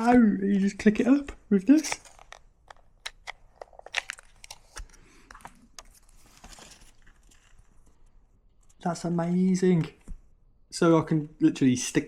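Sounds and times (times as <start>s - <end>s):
label paper crinkling: 0.0s - 8.9s.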